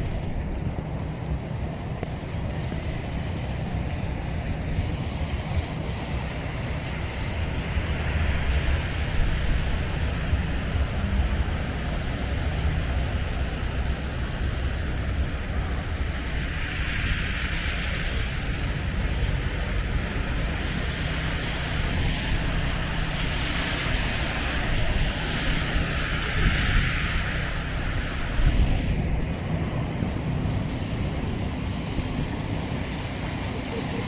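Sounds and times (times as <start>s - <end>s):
city street noise: 0.0s - 34.0s
wind buffeting microphone: 0.0s - 34.0s
hiss: 4.8s - 29.1s.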